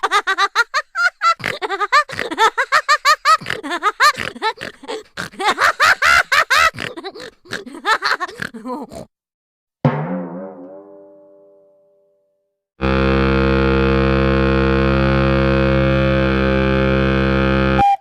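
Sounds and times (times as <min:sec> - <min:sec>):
high-pitched laughter: 0:00.0 - 0:09.1.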